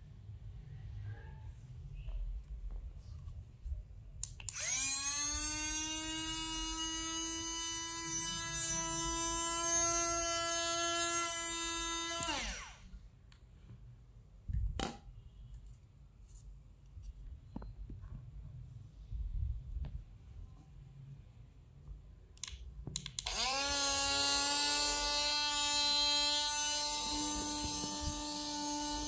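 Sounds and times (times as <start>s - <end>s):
blender motor whine: 4.5s - 12.9s, 23.2s - 29.0s.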